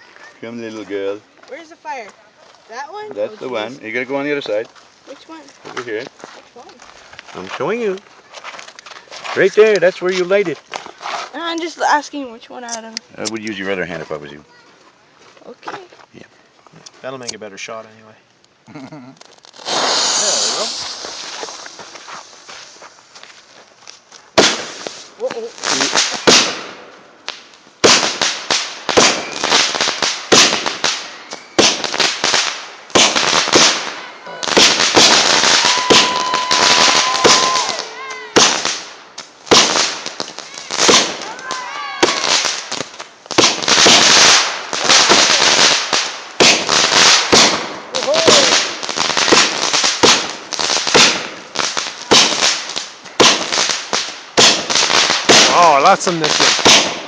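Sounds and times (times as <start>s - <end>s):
firework bangs with crackling: 19.2s - 22.8s, 24.3s - 57.0s.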